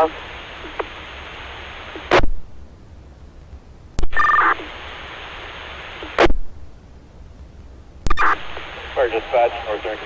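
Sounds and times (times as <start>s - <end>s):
burst of radio static: 0.0s - 2.4s, 4.0s - 6.5s, 8.1s - 10.0s
radio channel hiss: 0.0s - 10.0s
radio key-up click: 0.6s - 1.0s.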